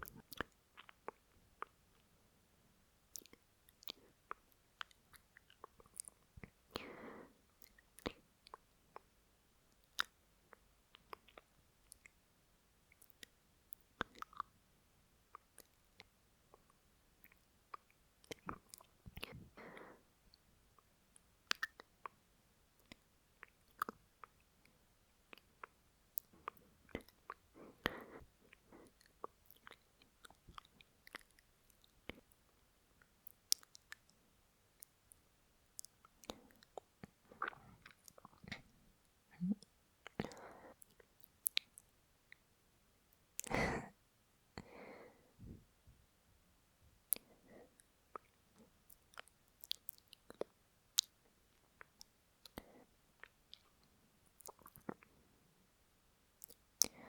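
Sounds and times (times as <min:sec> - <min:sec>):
wet lip and tongue clicks: 0:00.0 - 0:02.1, 0:03.1 - 0:06.9, 0:07.5 - 0:12.2, 0:12.9 - 0:14.5, 0:15.3 - 0:19.4, 0:20.3 - 0:22.2, 0:22.8 - 0:38.7, 0:39.4 - 0:42.5, 0:47.1 - 0:55.2, 0:56.4 - 0:57.0
soft breath: 0:06.7 - 0:07.4, 0:19.2 - 0:20.1, 0:40.2 - 0:40.8, 0:44.6 - 0:45.7
faint short breaths: 0:44.6 - 0:45.6.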